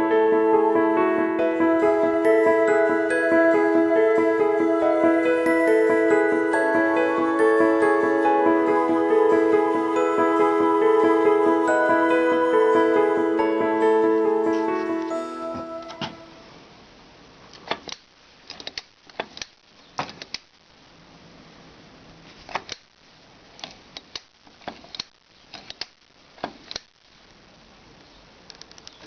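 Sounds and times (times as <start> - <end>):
faint steady hiss: 11.3 - 29.0.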